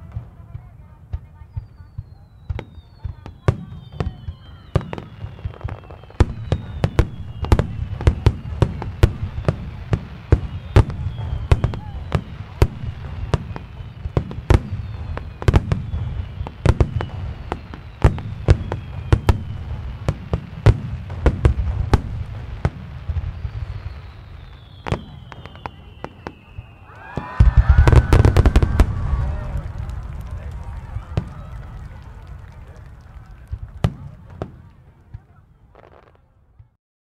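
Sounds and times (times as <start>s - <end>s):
high whistling falling in pitch: 1.5s - 20.1s, 23.1s - 31.8s.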